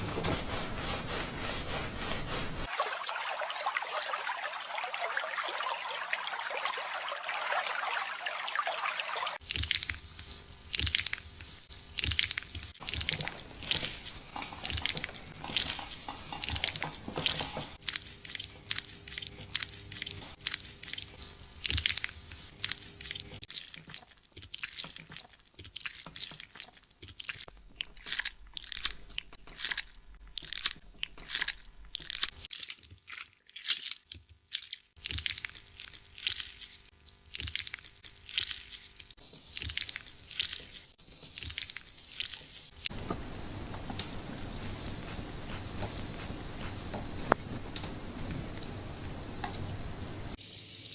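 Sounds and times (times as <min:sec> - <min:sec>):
fingers scratching through hair: 0:00.0 - 0:02.7, 0:09.8 - 0:23.4, 0:38.3 - 0:48.6.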